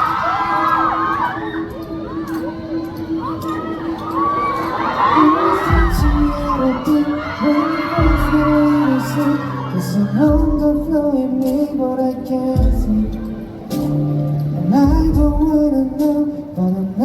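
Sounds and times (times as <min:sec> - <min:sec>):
audience screaming: 0:00.0 - 0:14.9
deep bass hits: 0:05.7 - 0:06.8, 0:08.0 - 0:08.7, 0:10.3 - 0:11.1, 0:12.6 - 0:13.4, 0:14.8 - 0:15.7
live band music: 0:07.8 - 0:16.7.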